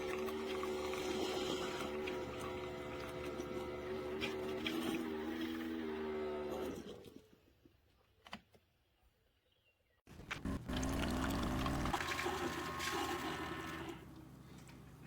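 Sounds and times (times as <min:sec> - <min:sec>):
coffee machine pump humming: 0:00.0 - 0:05.2, 0:10.4 - 0:15.0.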